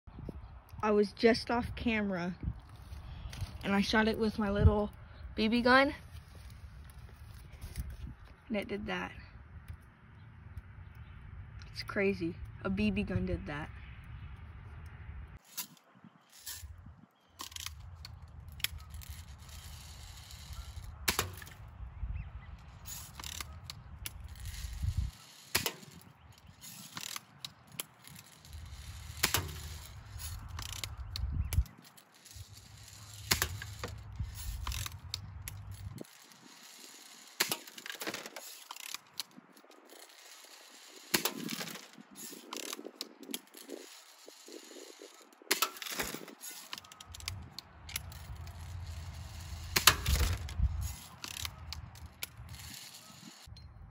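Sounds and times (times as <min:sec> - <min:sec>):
wind rumble on microphone: 0:00.1 - 0:25.2, 0:28.1 - 0:36.6, 0:47.1 - 0:53.9.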